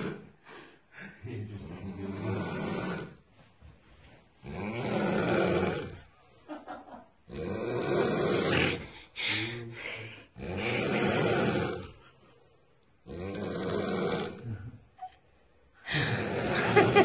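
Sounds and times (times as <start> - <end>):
woman snoring loudly: 0.0 - 0.3, 1.9 - 3.2, 4.4 - 6.0, 7.3 - 9.6, 10.4 - 12.0, 13.1 - 14.5, 15.9 - 17.0
quiet breaths: 0.0 - 4.4, 8.8 - 16.7.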